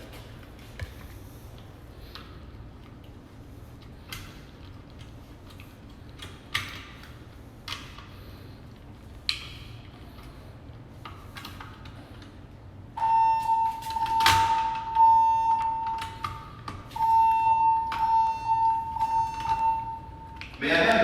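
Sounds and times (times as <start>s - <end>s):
fire alarm high continuous tone: 12.9s - 20.9s.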